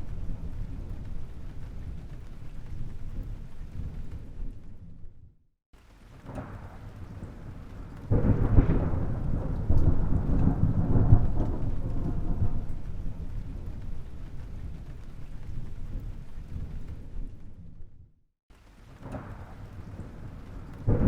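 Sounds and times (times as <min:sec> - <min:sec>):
thunder clap and rumble: 0:00.0 - 0:05.4, 0:06.1 - 0:18.1, 0:18.8 - 0:21.0.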